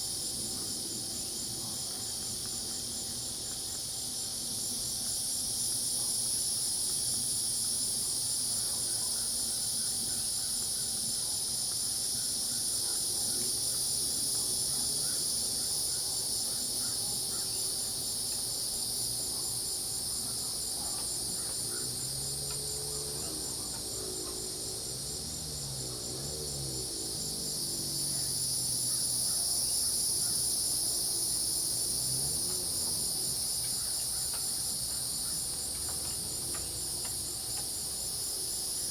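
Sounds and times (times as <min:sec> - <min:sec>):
cricket trill: 0:00.0 - 0:38.9
insect drone: 0:00.0 - 0:38.9
frog calls: 0:20.3 - 0:24.5.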